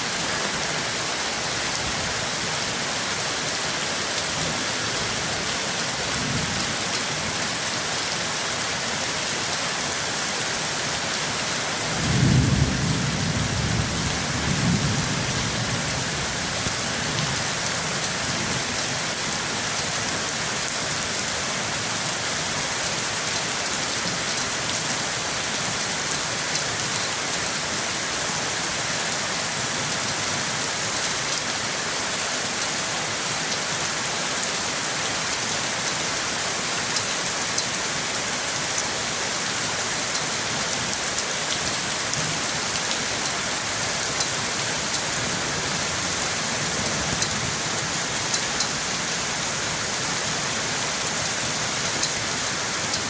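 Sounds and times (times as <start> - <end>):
heavy rain hissing: 0.0 - 53.0
thunder rumbling: 12.0 - 16.1.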